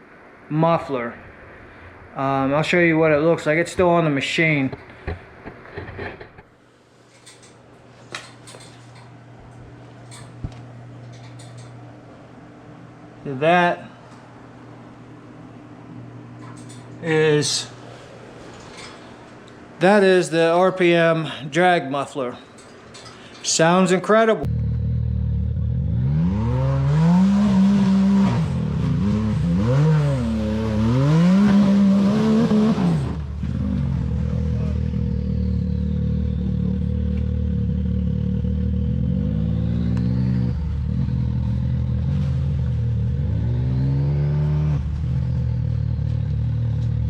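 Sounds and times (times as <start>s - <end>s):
engine revving and idling: 24.5s - 47.0s.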